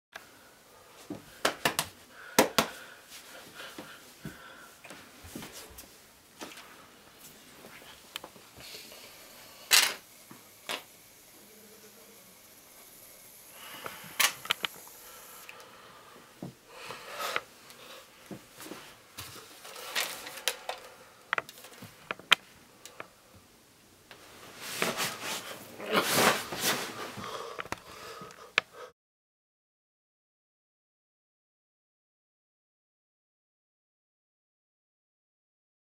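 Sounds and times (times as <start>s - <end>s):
rustling handling noise: 18.2s - 22.4s, 24.2s - 27.8s.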